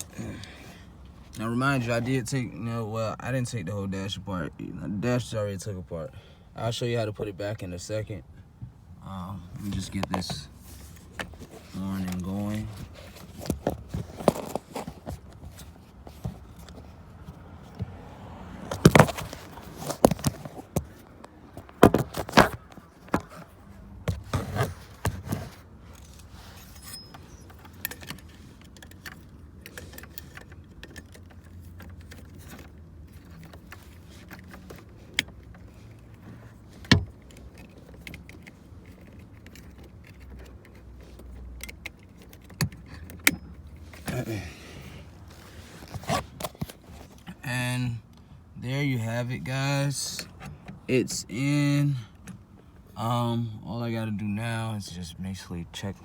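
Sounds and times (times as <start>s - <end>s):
small parts clicking and rattling: 26.0s - 44.1s.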